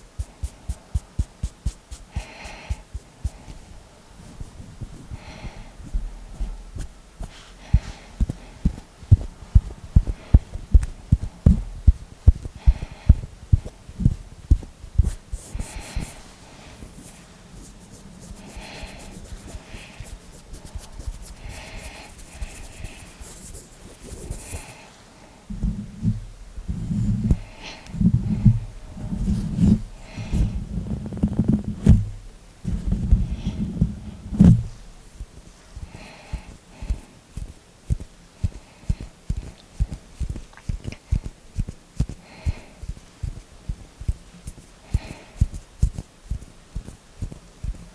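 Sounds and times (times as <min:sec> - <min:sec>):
low rubbing swishes: 0:25.5 - 0:35.0
light rustling: 0:25.5 - 0:35.8
soft thumps of hand taps: 0:31.1 - 0:34.8.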